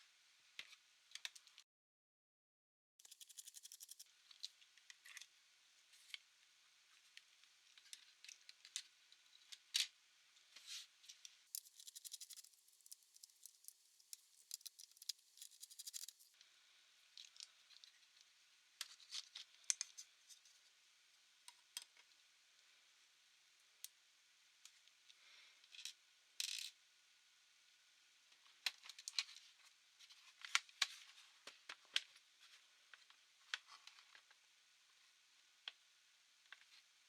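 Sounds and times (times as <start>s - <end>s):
rapid even ticks: 3.0s - 4.0s, 11.5s - 16.3s
small hard parts clicking and scraping: 3.0s - 6.3s, 6.9s - 16.4s.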